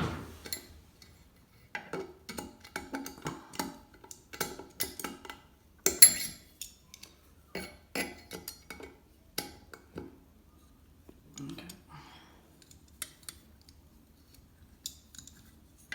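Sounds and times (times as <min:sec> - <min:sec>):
light metallic clicks and clinks: 0:02.3 - 0:08.9.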